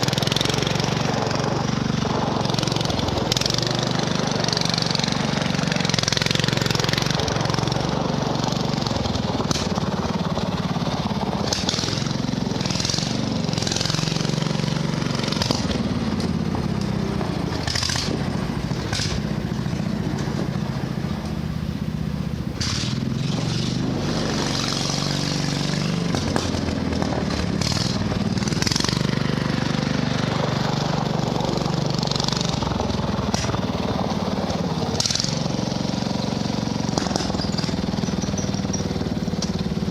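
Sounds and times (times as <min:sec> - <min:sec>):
lawnmower engine running: 0:00.0 - 0:39.9.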